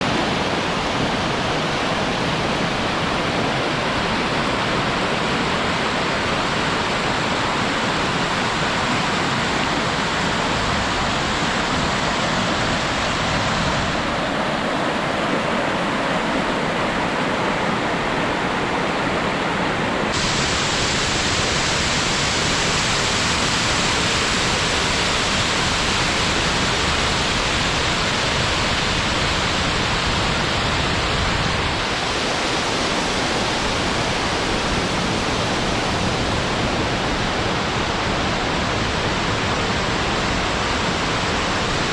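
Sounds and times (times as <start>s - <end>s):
waterfall rushing: 0.0s - 41.9s.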